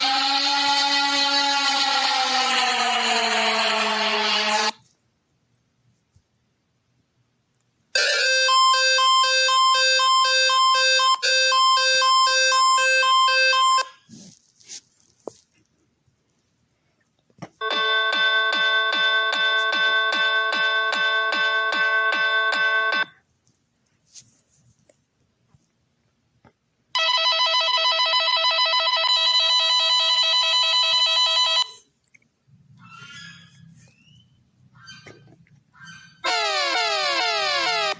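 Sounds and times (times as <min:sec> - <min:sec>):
two-tone electronic alarm: 0:00.0 - 0:04.8, 0:08.0 - 0:14.1, 0:17.6 - 0:23.2, 0:27.0 - 0:31.8, 0:35.8 - 0:37.9.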